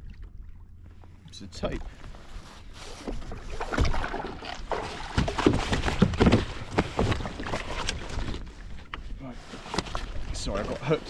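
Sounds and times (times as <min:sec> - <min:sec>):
water splashing: 0:02.9 - 0:08.4
knocks on plastic hull: 0:05.0 - 0:07.4.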